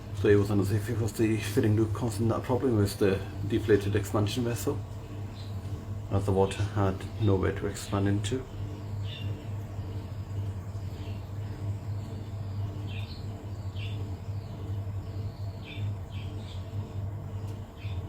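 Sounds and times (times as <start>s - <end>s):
boiler humming: 0.0s - 18.0s
bird chirping: 12.0s - 16.7s.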